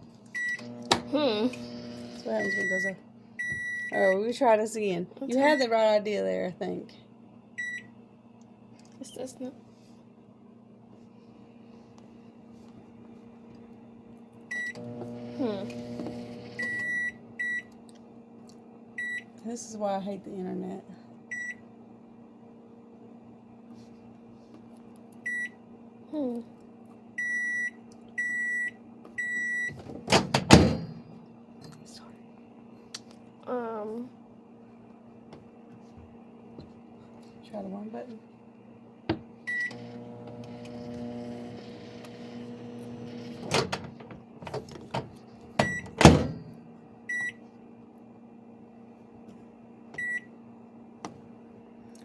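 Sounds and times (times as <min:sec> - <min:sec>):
microwave oven humming: 0:00.0 - 0:04.4, 0:05.2 - 0:08.7, 0:10.1 - 0:19.6, 0:20.5 - 0:31.6, 0:38.3 - 0:51.9
microwave oven beeping: 0:00.3 - 0:04.2, 0:07.6 - 0:07.9, 0:14.5 - 0:17.8, 0:19.0 - 0:19.3, 0:21.3 - 0:21.7, 0:25.2 - 0:25.6, 0:27.2 - 0:31.2, 0:39.4 - 0:44.0, 0:45.6 - 0:47.4, 0:50.0 - 0:50.4
microwave clicks: 0:00.4 - 0:02.2.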